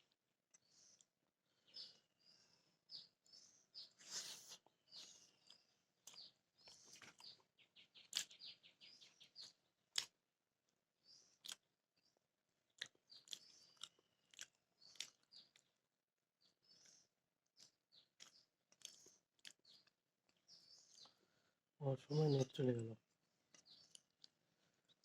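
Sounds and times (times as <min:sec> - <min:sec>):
person chewing with lip smacks: 0:04.0 - 0:07.4, 0:08.0 - 0:08.4, 0:09.9 - 0:10.2, 0:11.4 - 0:11.7, 0:12.7 - 0:15.7, 0:17.6 - 0:21.1, 0:23.5 - 0:25.0.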